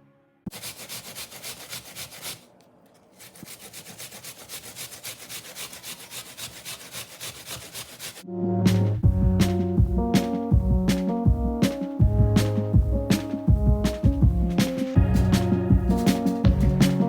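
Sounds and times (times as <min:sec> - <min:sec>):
hand grater rasping apple: 0:00.5 - 0:08.2.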